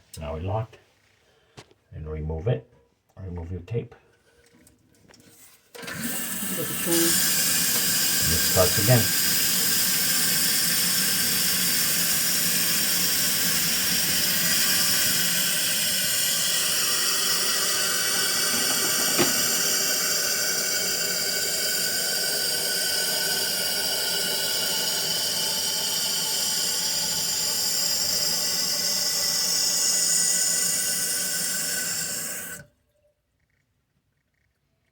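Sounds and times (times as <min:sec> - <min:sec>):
toilet tank refilling hiss: 0:05.7 - 0:32.8.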